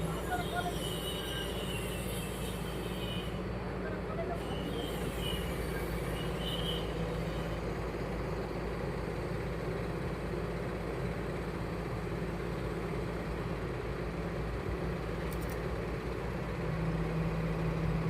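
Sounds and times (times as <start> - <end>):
diesel engine running: 0.0 - 18.0.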